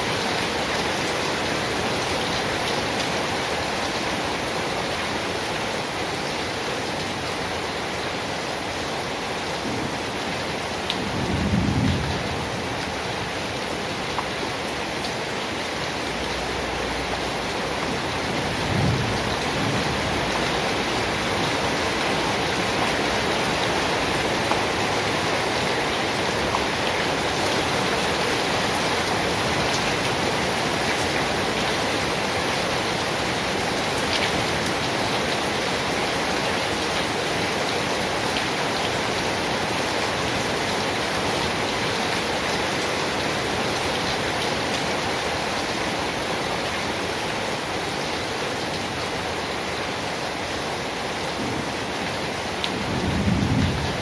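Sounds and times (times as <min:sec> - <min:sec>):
steady rain falling: 0:00.0 - 0:54.0
low rumbles of thunder: 0:11.0 - 0:12.6, 0:18.4 - 0:20.8, 0:52.8 - 0:54.0.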